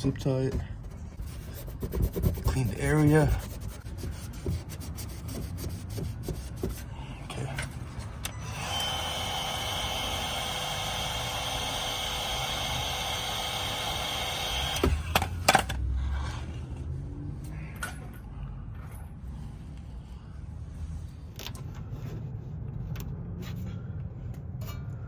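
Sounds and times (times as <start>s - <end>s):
heat gun blowing: 8.3s - 15.2s.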